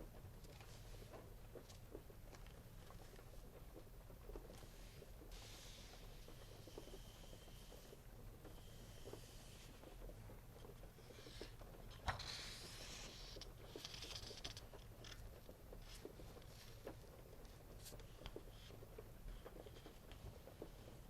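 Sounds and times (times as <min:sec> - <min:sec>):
paper rustling and crinkling: 0:11.2 - 0:18.6.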